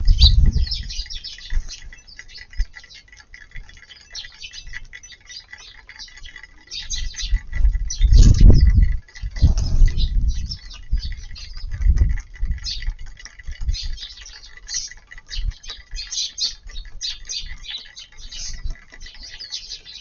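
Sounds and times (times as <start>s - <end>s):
sparrows chirping: 0.0s - 20.0s
low rumble: 8.2s - 10.6s.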